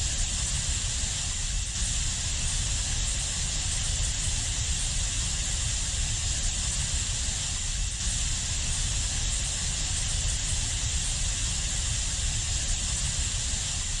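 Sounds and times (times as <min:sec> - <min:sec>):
steady high hiss: 0:00.0 - 0:14.0.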